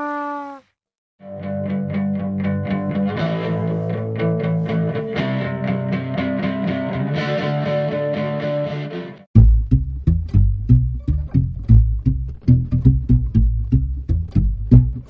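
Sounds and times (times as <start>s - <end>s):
plucked guitar notes: 1.3s - 15.0s
heavy bass hits: 9.4s - 15.0s.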